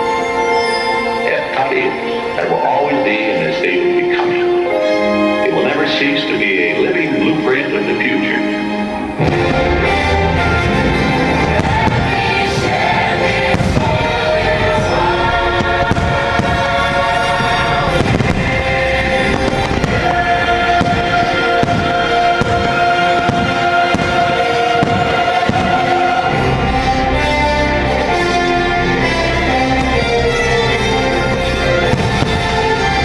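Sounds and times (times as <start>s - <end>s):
fireworks bursting: 9.0s - 27.4s, 29.0s - 33.0s.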